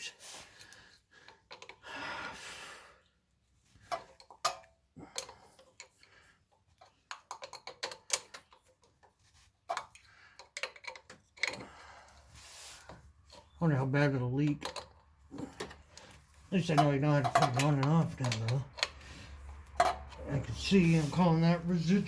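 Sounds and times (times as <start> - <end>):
hand tools and metal parts clicking: 0.6 - 1.8, 3.9 - 22.0
rustling scrape: 19.0 - 22.0.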